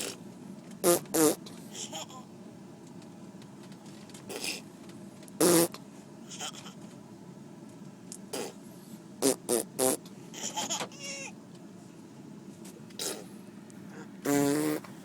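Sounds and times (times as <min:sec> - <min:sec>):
baby blowing raspberries: 0:00.8 - 0:01.4, 0:04.3 - 0:04.6, 0:05.4 - 0:05.8, 0:08.4 - 0:08.6, 0:09.2 - 0:10.5, 0:13.0 - 0:15.0.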